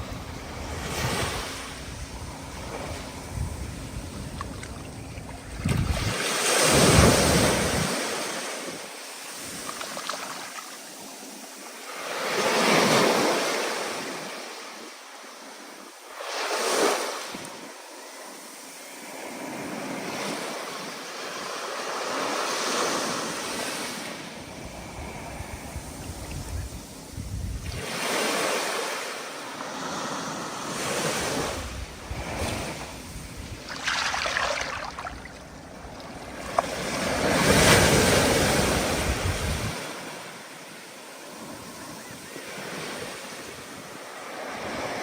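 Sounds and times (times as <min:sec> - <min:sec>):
wind rumble on microphone: 0:00.0 - 0:08.0, 0:24.4 - 0:28.0, 0:31.2 - 0:40.0
ocean waves breaking: 0:27.8 - 0:45.0.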